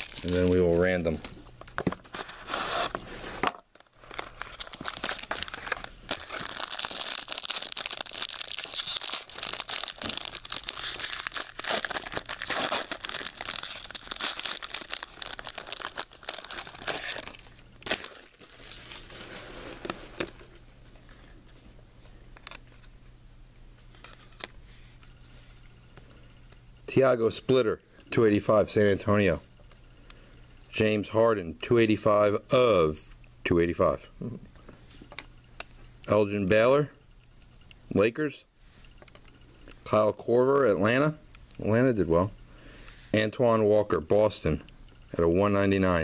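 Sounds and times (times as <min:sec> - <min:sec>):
plastic wrapping crinkling and tearing: 0:00.0 - 0:01.0, 0:03.7 - 0:19.3.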